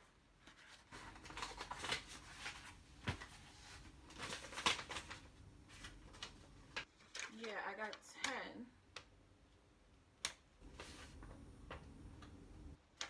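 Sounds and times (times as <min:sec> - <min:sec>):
paper cards flicking and rustling: 0:00.4 - 0:08.3, 0:10.6 - 0:11.8.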